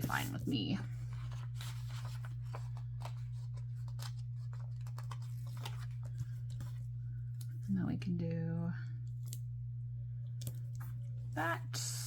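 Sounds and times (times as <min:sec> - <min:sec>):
paper rustling: 0:00.0 - 0:06.9
steady low hum: 0:00.0 - 0:12.0.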